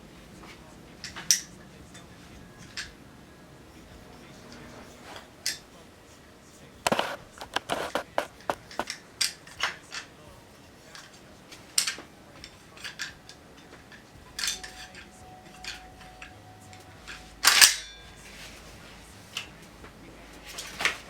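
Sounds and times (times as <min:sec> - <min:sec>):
metal gun parts clicking: 0:06.9 - 0:10.1, 0:10.9 - 0:15.0, 0:17.4 - 0:17.9.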